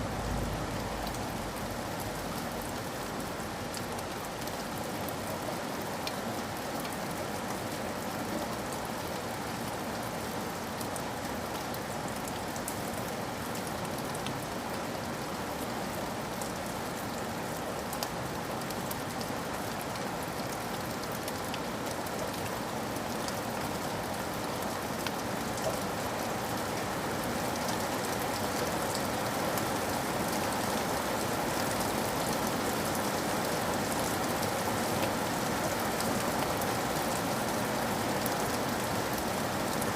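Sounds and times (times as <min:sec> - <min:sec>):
steady rain falling: 0:00.0 - 0:39.9
rain drop ticks: 0:00.2 - 0:03.1.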